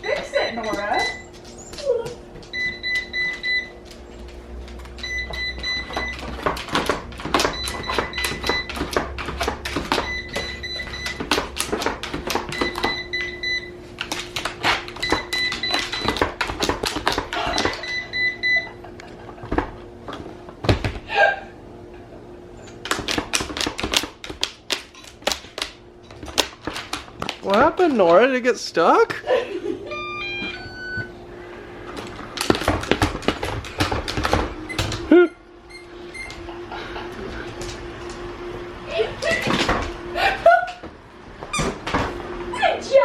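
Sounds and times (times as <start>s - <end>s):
dog claws clicking and scraping: 6.0s - 13.0s, 14.0s - 17.8s, 22.7s - 27.8s
robot vacuum error beeps: 29.9s - 31.2s.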